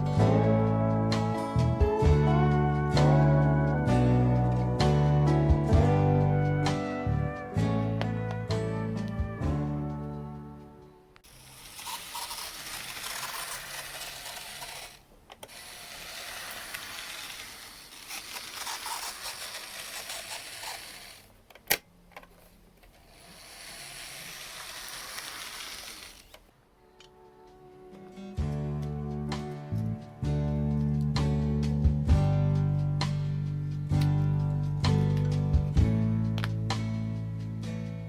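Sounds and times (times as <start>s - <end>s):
model train squeaking and scraping: 11.2s - 21.3s, 23.1s - 26.4s.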